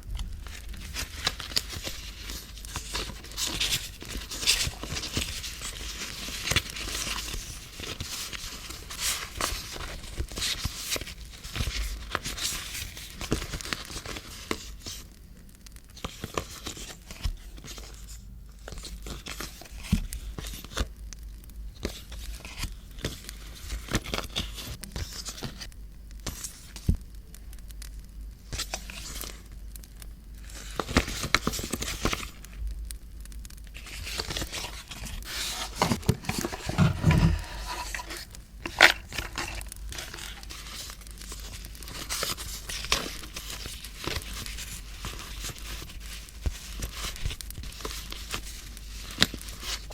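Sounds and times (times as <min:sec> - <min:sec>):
paper crinkling and rustling: 0:00.2 - 0:15.1, 0:16.0 - 0:20.9, 0:21.8 - 0:27.0, 0:28.4 - 0:29.6, 0:30.4 - 0:32.6, 0:33.7 - 0:49.9.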